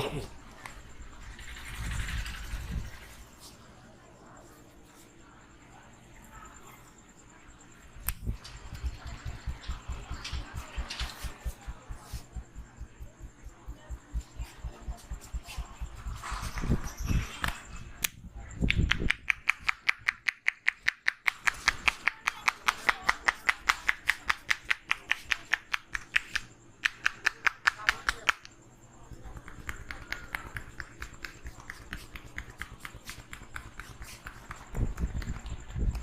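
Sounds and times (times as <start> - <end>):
hands slapping head: 18.6 - 28.5, 29.4 - 36.0.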